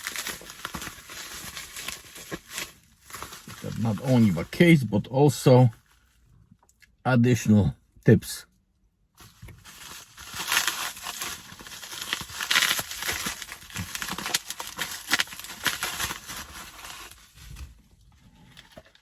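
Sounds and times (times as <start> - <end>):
plastic packaging crinkling: 0.0 - 4.8, 9.2 - 17.6.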